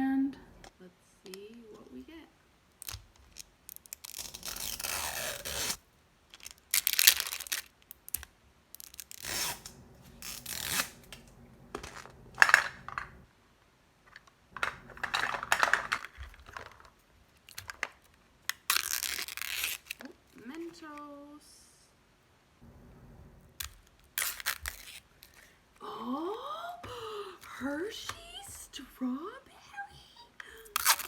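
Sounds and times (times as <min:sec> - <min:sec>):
plastic packaging tearing and crinkling: 0:02.8 - 0:11.2, 0:14.6 - 0:20.3, 0:23.6 - 0:25.6, 0:30.6 - 0:31.0.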